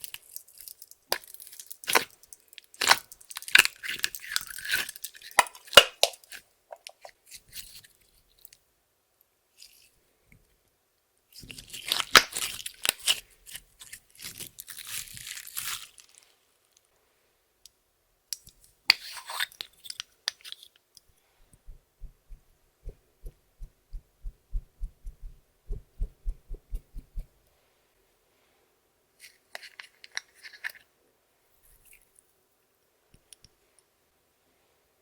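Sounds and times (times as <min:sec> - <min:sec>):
soft low pats on slime: 0:21.5 - 0:27.4.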